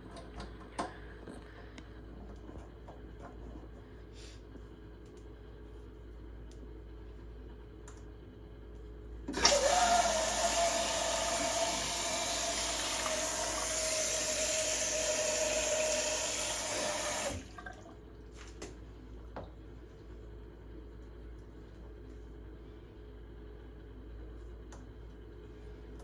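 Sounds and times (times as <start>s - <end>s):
tap running water into sink: 9.3s - 17.8s.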